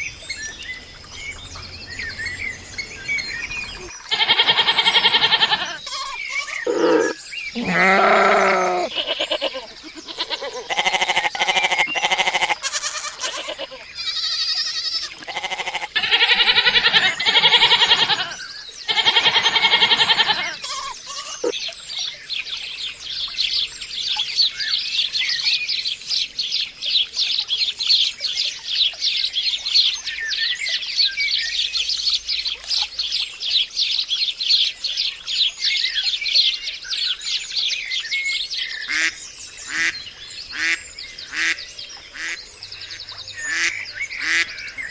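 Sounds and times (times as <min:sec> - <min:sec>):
birds chirping rapidly: 0:00.0 - 0:13.4, 0:14.0 - 0:21.6, 0:38.4 - 0:44.9
farm animals bleating: 0:04.0 - 0:21.5.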